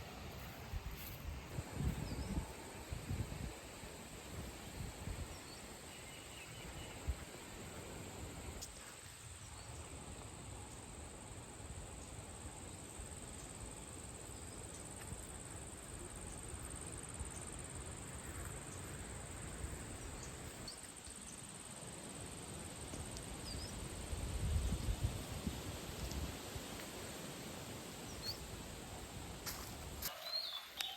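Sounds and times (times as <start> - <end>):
faint background hiss: 0.0 - 30.9
insects chirring: 0.0 - 30.9
short insect chirps: 29.1 - 30.9.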